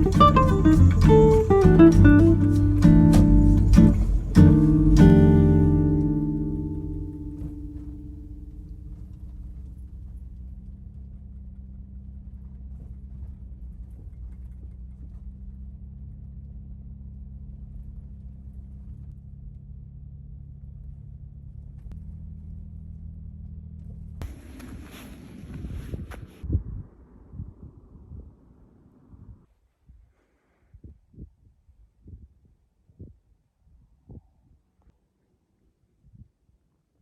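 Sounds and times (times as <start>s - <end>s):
vehicle running rumble: 0.0s - 25.1s
faint hum: 0.0s - 29.5s
wind hiss on microphone: 24.2s - 28.4s.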